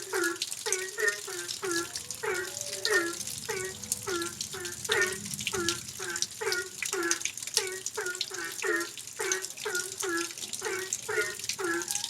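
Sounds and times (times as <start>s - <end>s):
rain falling: 0.0s - 12.0s.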